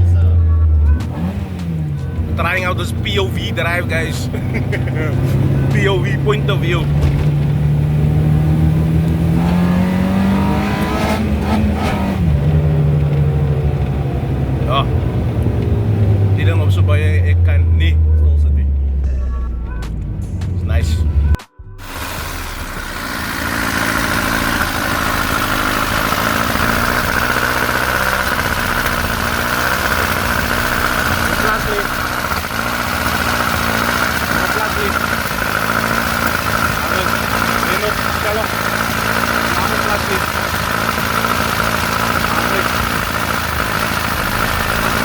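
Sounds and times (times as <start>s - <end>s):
car engine running: 0.0s - 45.0s
road noise: 0.0s - 45.0s
steady whine: 20.9s - 45.0s.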